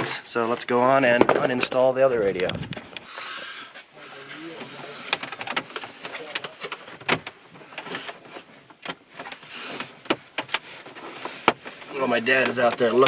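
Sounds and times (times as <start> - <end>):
objects clicking and knocking: 4.5 - 13.0.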